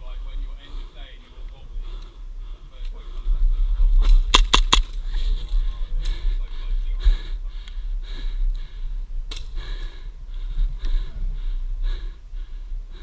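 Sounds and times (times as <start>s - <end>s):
sharp click: 4.3s - 4.9s
heavy quick breathing: 5.0s - 13.0s.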